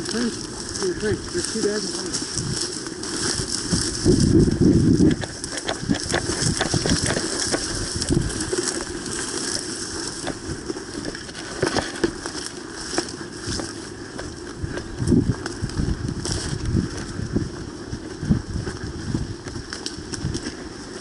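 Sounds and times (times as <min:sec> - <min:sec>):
gear rattling: 0:00.0 - 0:12.1
crackling clicks: 0:00.0 - 0:21.0
rustling through brush and grass: 0:00.0 - 0:21.0.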